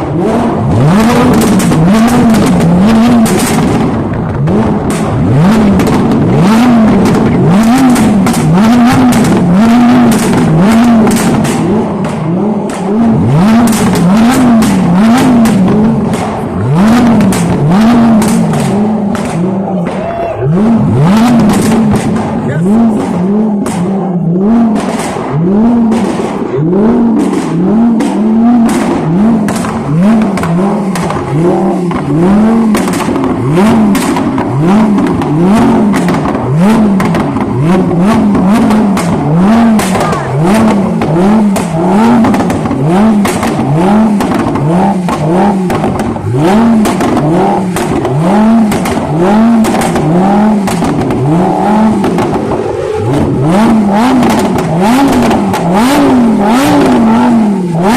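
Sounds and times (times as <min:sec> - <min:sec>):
car engine revving: 0:00.0 - 0:57.9
exhaust crackles: 0:00.0 - 0:57.9.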